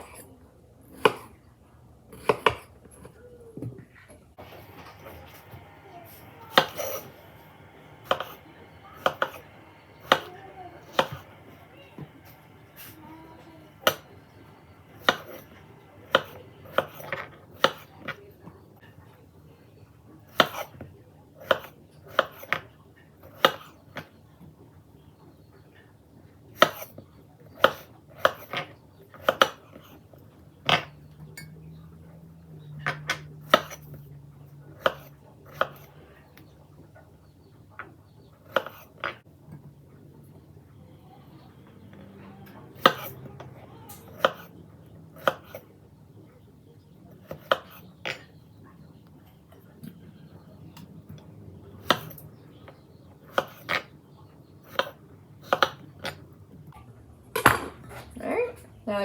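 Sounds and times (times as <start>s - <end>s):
knife chopping on cutting board: 2.2s - 2.6s, 4.4s - 18.2s, 20.3s - 20.8s, 21.4s - 24.1s, 26.6s - 30.0s, 32.8s - 34.0s, 34.7s - 35.9s, 38.4s - 39.2s, 42.7s - 44.6s, 45.2s - 45.6s, 47.2s - 48.2s, 51.8s - 53.9s, 54.6s - 56.2s
utensils and dishes knocking: 4.4s - 18.2s, 30.7s - 31.8s.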